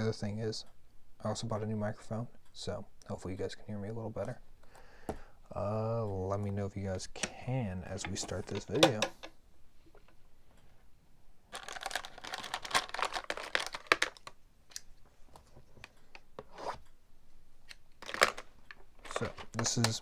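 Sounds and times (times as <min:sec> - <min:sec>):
packaging tearing and crinkling: 0:11.5 - 0:14.4, 0:18.0 - 0:20.0.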